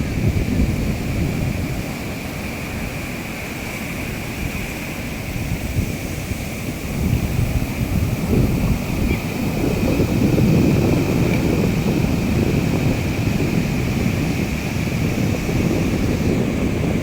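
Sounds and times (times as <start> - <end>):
outdoor noise rush: 0.0 - 17.0
wind buffeting microphone: 0.0 - 17.0.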